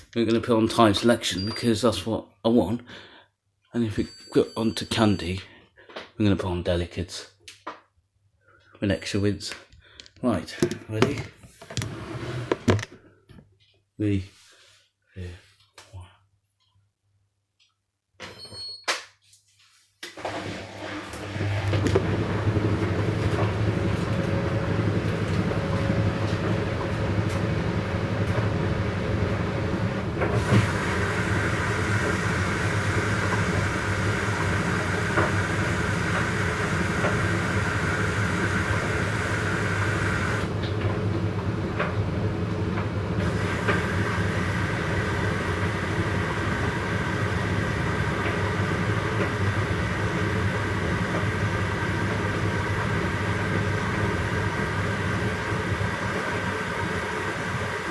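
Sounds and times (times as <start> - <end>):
washing machines humming: 11.8 - 12.8, 20.1 - 57.9.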